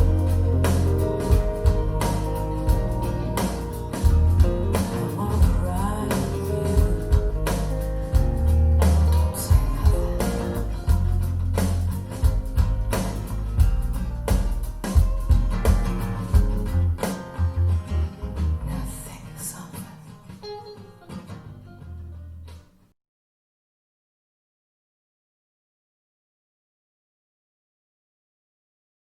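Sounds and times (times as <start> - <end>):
pop-rock music over loudspeakers: 0.0 - 18.9.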